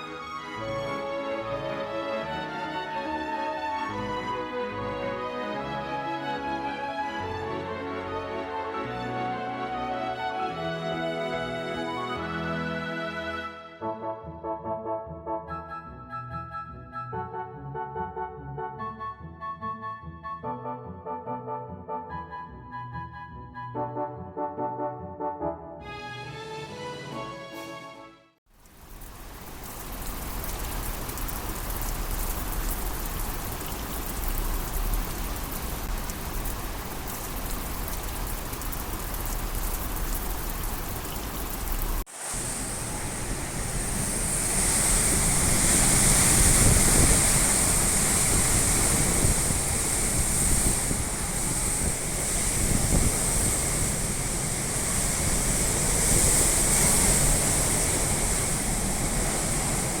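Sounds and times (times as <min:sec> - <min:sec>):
heavy rain hissing: 0:28.5 - 1:00.0
gusty wind rumble: 0:29.0 - 1:00.0.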